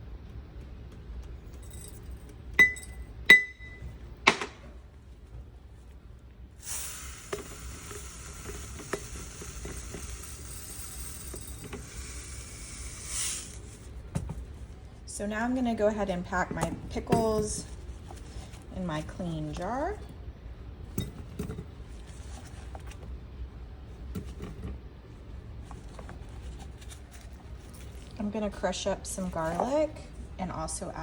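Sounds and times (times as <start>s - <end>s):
glass jar clinking: 1.5s - 3.8s
steady hiss: 6.6s - 14.0s.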